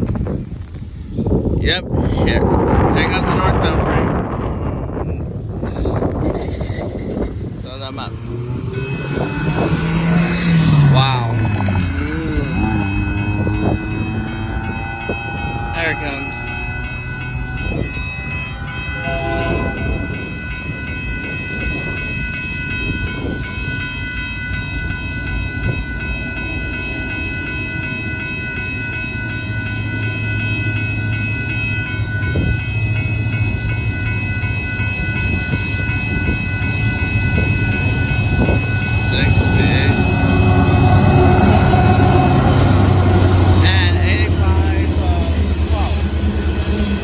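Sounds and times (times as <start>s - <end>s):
freight train rumble and rattle: 0.0s - 47.0s
steady high ringing: 6.8s - 47.0s
low engine drone: 7.4s - 19.2s, 25.9s - 47.0s.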